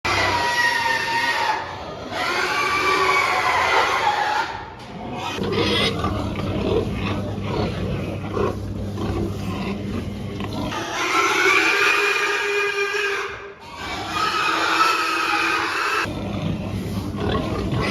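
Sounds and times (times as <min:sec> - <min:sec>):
pigs grunting: 0:00.1 - 0:17.9.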